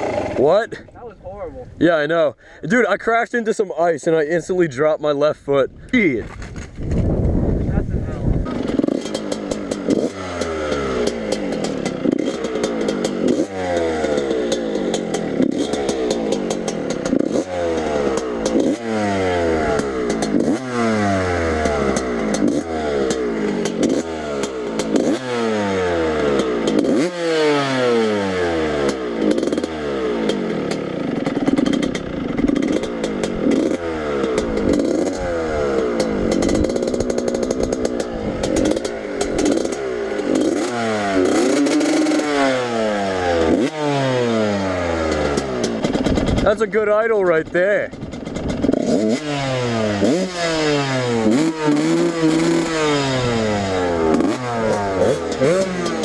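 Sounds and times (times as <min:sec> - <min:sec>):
dirt bike engine revving: 0:00.0 - 0:01.1, 0:06.4 - 0:56.0.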